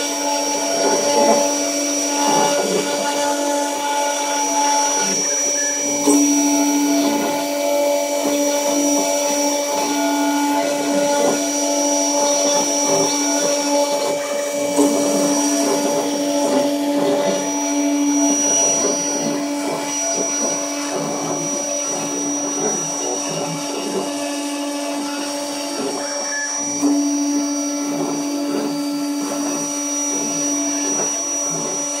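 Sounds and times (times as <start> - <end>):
engraving machine motor hum: 0.0 - 32.0
high spindle whine: 0.0 - 32.0.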